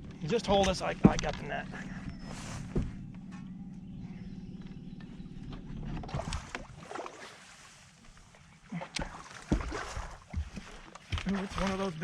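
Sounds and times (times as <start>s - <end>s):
boat motor humming: 0.0s - 12.0s
knocks on boat: 0.4s - 1.5s
water splashing: 5.8s - 12.0s.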